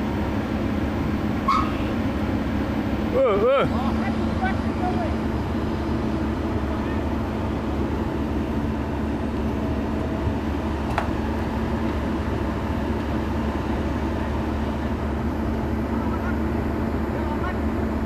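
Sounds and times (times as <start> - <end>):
diesel machinery engine drone: 0.0 - 18.0.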